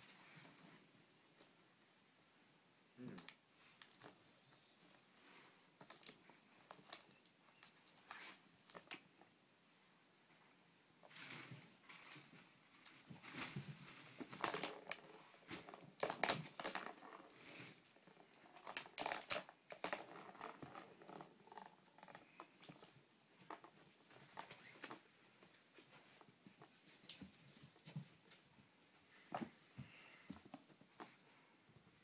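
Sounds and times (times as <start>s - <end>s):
toy crinkling and rustling: 3.1s - 9.2s, 11.0s - 28.0s.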